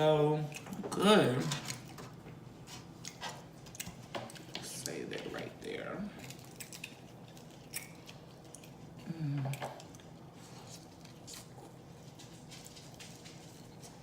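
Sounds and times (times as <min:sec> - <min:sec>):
chewing with mouth clicks: 0:01.5 - 0:04.6, 0:06.2 - 0:14.0
person humming: 0:09.0 - 0:09.8.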